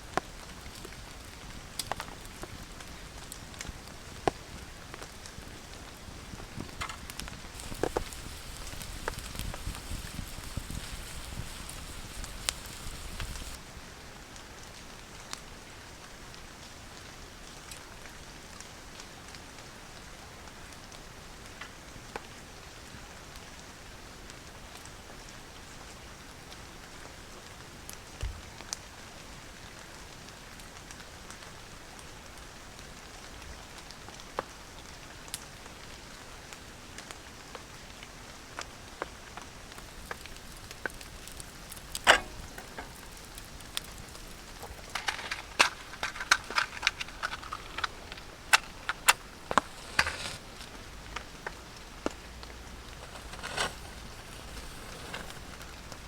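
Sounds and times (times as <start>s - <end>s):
steady rain hiss: 0.0s - 56.0s
raindrops ticking: 6.6s - 13.6s, 39.7s - 56.0s.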